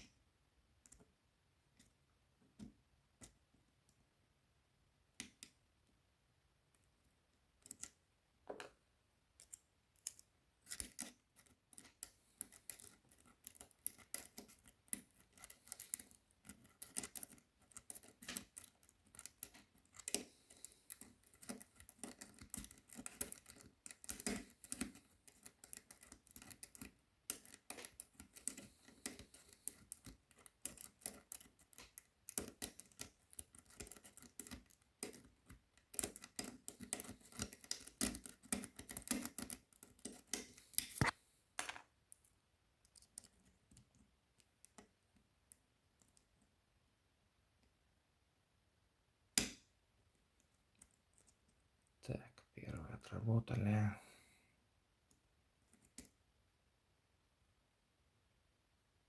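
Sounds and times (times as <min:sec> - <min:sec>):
lock pick clicking and scraping: 0:09.4 - 0:41.8.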